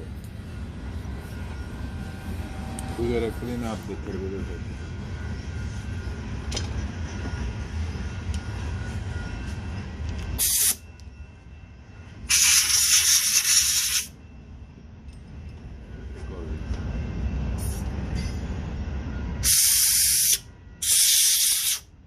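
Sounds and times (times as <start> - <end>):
hissing spray: 12.3 - 14.1, 19.4 - 21.8.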